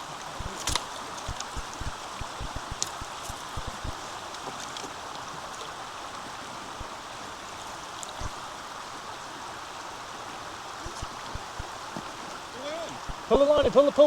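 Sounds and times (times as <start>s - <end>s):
river water rushing: 0.0s - 14.0s
short low thumps: 0.4s - 4.0s, 10.8s - 11.7s, 13.0s - 13.3s.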